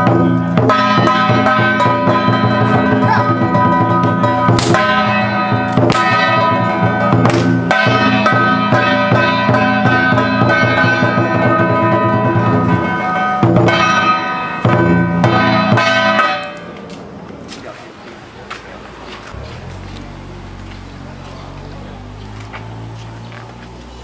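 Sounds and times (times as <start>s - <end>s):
drum and cymbal strikes: 0.0s - 16.8s
temple ritual music: 0.0s - 24.0s.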